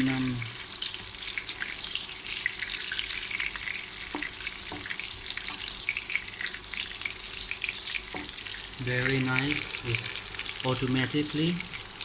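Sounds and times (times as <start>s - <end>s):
sausages sizzling in oil: 0.0s - 12.0s.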